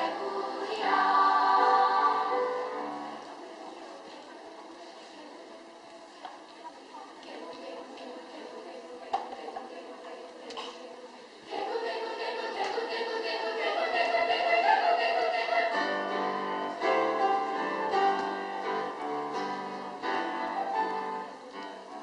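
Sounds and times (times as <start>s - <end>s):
children's choir singing: 0.0s - 5.8s, 6.8s - 22.0s
piano accompaniment: 12.9s - 22.0s.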